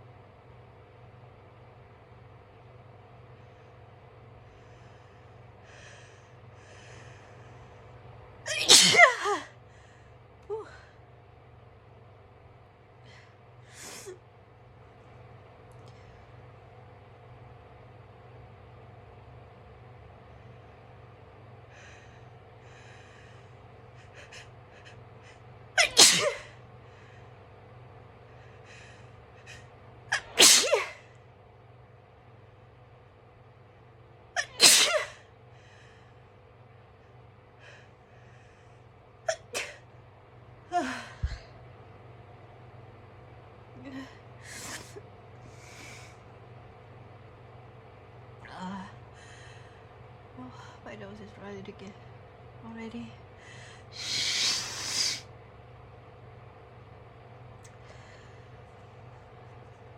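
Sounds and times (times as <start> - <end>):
woman sneezing: 8.5 - 9.6, 25.8 - 26.6, 30.1 - 31.1, 34.4 - 35.2, 39.3 - 39.8, 54.0 - 55.3.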